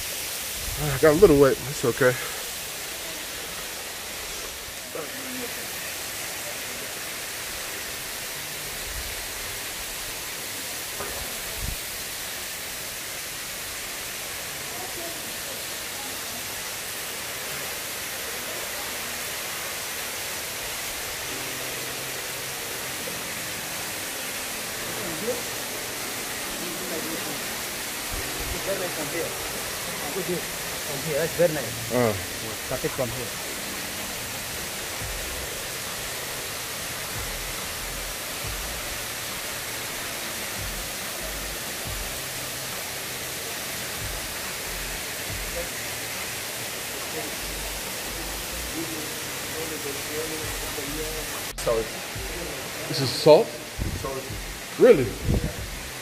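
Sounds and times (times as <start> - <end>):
waterfall rushing: 0.0 - 56.0
low bumps: 53.8 - 55.9.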